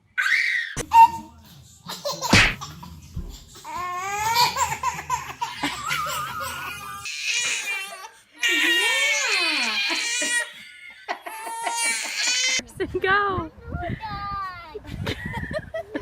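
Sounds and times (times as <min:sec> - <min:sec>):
baby laughing and babbling: 0:00.8 - 0:10.5.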